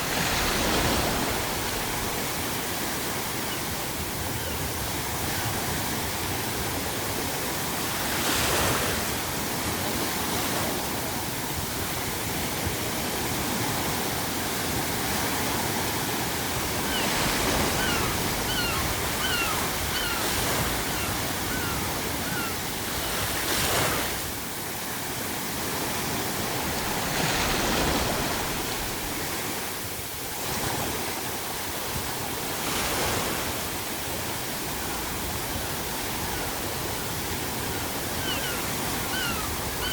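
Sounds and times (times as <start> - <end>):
ocean waves breaking on shore: 0.0 - 39.9
seagull crying: 16.8 - 23.4, 37.5 - 39.9.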